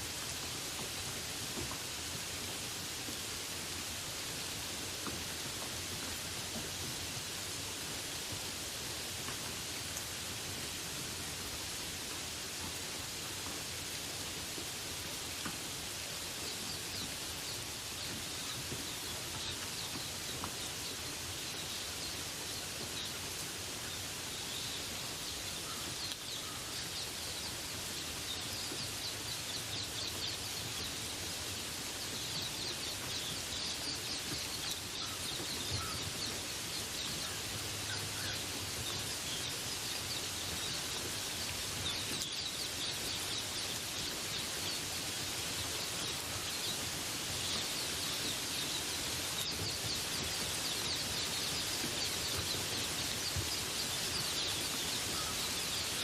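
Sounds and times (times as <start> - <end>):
steady rain falling: 0.0 - 56.0
small birds chirping: 0.2 - 56.0.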